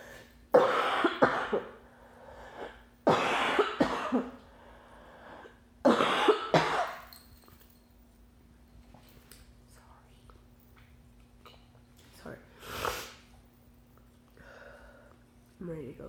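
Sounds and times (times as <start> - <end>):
woman coughing: 0.6 - 1.8, 3.1 - 4.4, 5.9 - 7.1.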